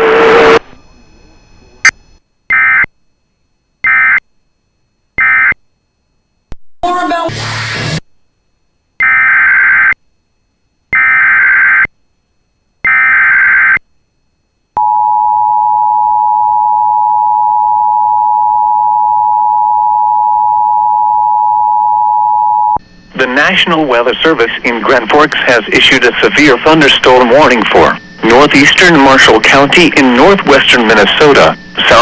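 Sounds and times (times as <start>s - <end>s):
digital data tone bursts: 23.2s - 32.0s.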